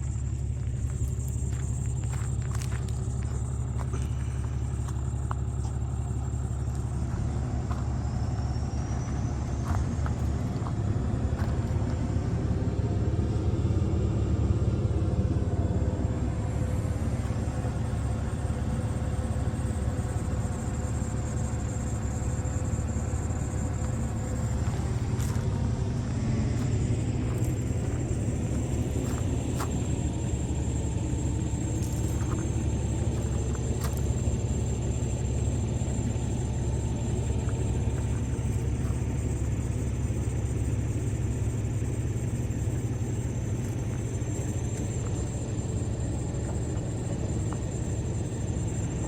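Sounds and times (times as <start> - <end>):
wood chipper engine rumbling: 0.0 - 49.0.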